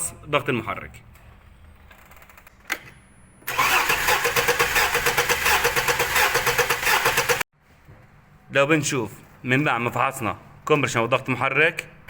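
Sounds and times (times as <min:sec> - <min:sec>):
car engine cranking on starter: 0:03.5 - 0:07.4.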